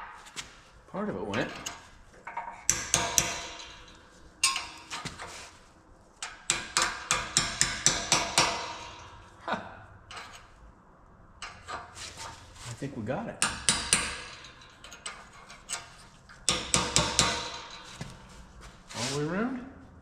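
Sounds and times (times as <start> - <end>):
hammer striking metal: 1.4 - 5.0, 6.2 - 9.2, 13.4 - 15.3, 16.5 - 18.2.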